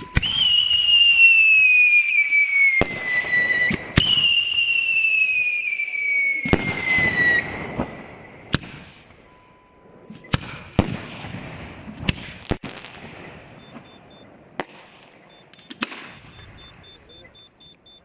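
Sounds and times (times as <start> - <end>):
firework whistle falling: 0.0 - 9.0
firework bangs: 0.0 - 9.3, 10.1 - 17.3
firework crackling: 0.0 - 9.3, 10.3 - 17.3.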